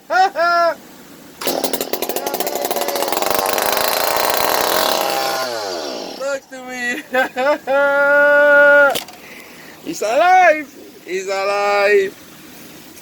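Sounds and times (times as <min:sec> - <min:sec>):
chainsaw engine running fast: 0:01.4 - 0:06.4.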